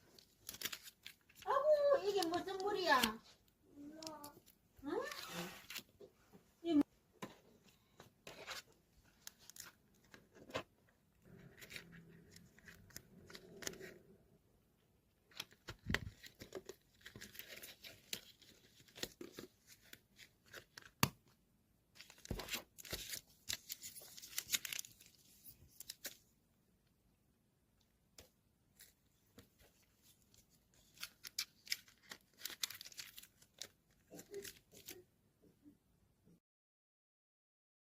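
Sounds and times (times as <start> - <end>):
rustling and tearing clicks: 28.8 - 35.0.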